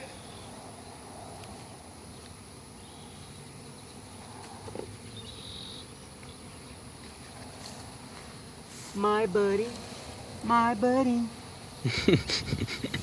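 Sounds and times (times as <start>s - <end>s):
high-pitched insect drone: 0.0s - 6.0s
honey bees buzzing: 0.0s - 13.0s.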